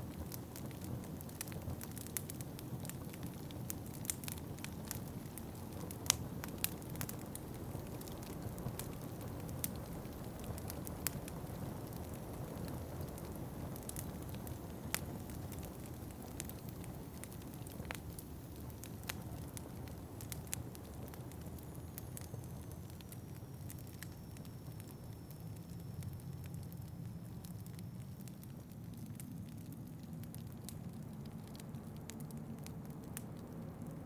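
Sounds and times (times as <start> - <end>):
low rumble of wind: 0.0 - 34.0
wood fire crackling and popping: 0.0 - 34.0.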